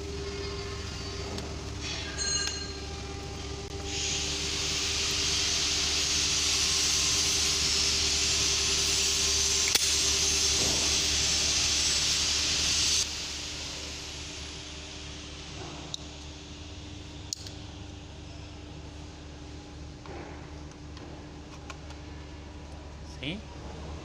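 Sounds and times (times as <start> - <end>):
low hum: 0.0 - 6.1
hiss of escaping air: 3.7 - 15.6.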